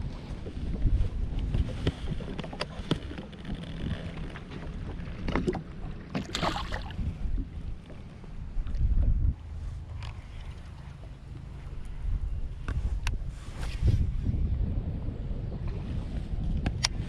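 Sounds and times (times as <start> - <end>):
wind buffeting microphone: 0.0 - 17.0
clicks and knocks from gear: 1.8 - 6.4
brief rustle: 12.6 - 14.0.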